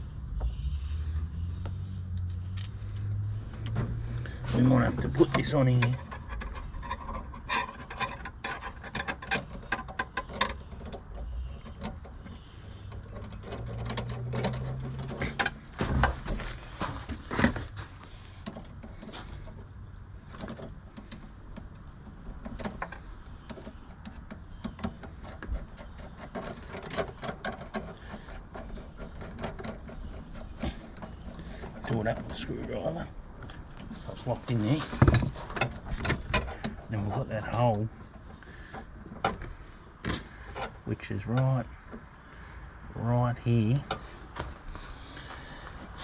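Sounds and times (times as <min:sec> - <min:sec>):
small metal parts clicking: 0:02.1 - 0:03.2, 0:05.2 - 0:15.8.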